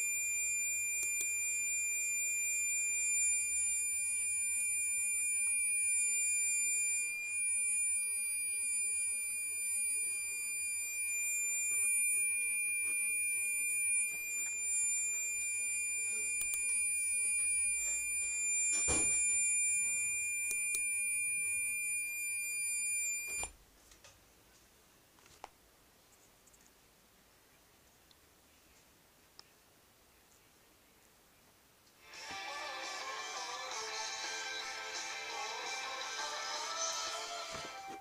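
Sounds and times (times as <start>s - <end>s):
high-pitched electronic tone: 0.0s - 23.4s.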